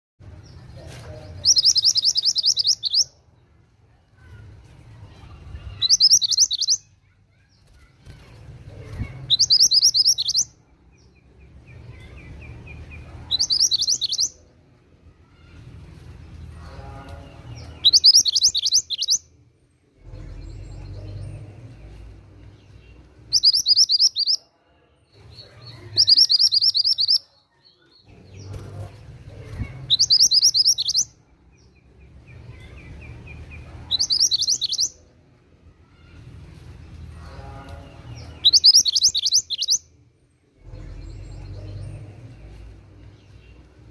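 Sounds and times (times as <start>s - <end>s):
soft bird twittering: 1.1s - 3.2s, 5.1s - 8.0s, 9.0s - 14.5s, 17.6s - 19.3s, 20.0s - 24.4s, 25.4s - 28.6s, 29.4s - 35.2s, 38.2s - 43.9s
songbird trilling: 1.4s - 3.1s, 5.8s - 6.8s, 9.3s - 10.5s, 13.4s - 14.3s, 17.8s - 19.2s, 23.3s - 24.4s, 25.9s - 27.2s, 29.9s - 31.1s, 33.9s - 35.0s, 38.4s - 39.8s.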